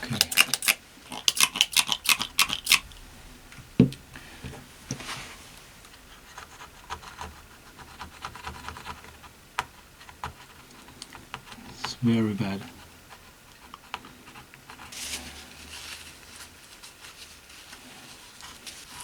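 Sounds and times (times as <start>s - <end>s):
scraping dried thermal compound: 0.0s - 19.0s
dull knock: 3.8s - 4.6s.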